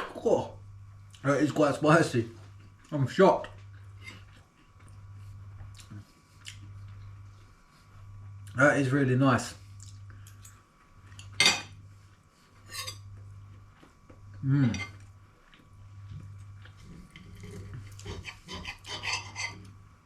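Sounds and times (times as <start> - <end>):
steady low hum: 0.0 - 20.0
cutlery scraping on a plate: 12.6 - 13.1, 17.1 - 19.7.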